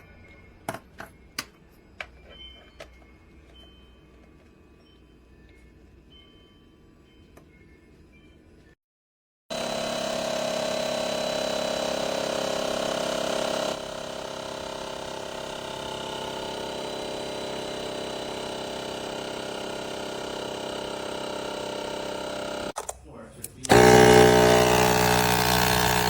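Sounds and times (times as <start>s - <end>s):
air compressor motor drone: 9.5s - 22.8s, 23.7s - 26.0s.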